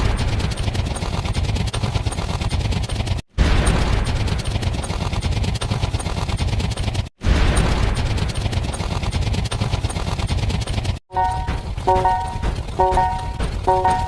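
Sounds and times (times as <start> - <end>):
rapid gunfire-like cracks: 0.0 - 14.0.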